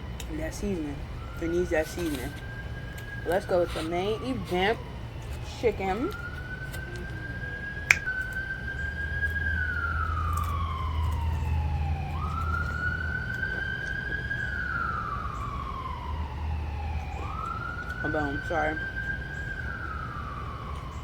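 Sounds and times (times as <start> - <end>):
emergency siren wailing: 0.0 - 21.0.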